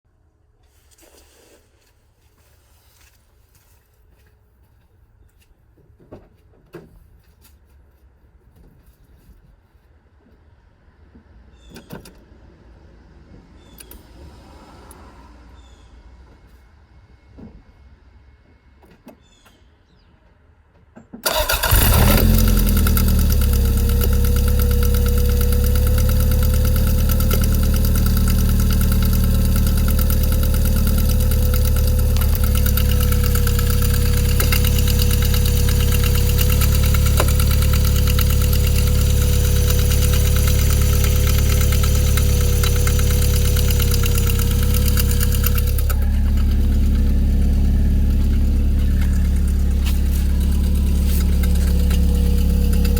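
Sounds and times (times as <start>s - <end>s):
car engine starting and idling: 21.2s - 52.9s.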